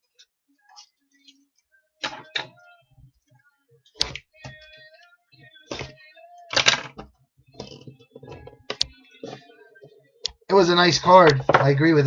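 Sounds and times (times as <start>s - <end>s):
boxes knocking on table: 11.3s - 11.8s.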